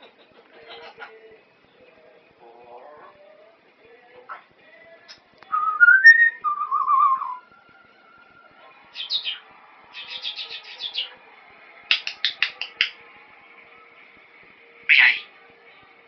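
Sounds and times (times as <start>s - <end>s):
parrot whistling: 5.5s - 7.4s, 10.0s - 11.2s
parrot chirps: 10.0s - 11.1s.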